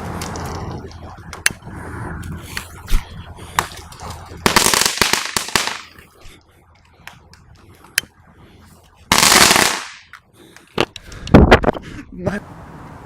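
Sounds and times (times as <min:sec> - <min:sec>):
firecrackers banging: 0:04.4 - 0:06.0, 0:09.1 - 0:10.1.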